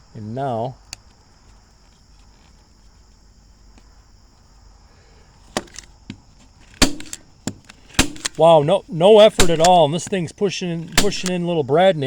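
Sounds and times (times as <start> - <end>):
crickets chirring: 0.0 - 12.0
staple gun snaps: 6.8 - 8.4, 9.4 - 9.9, 11.0 - 11.4.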